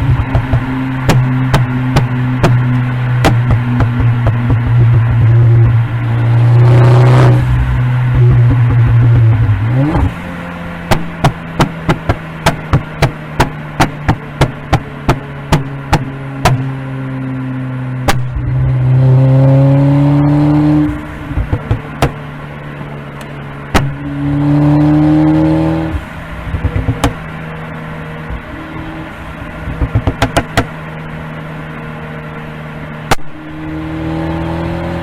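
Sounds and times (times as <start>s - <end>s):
engine revving: 0.0s - 35.0s
exhaust popping and crackling: 0.0s - 35.0s.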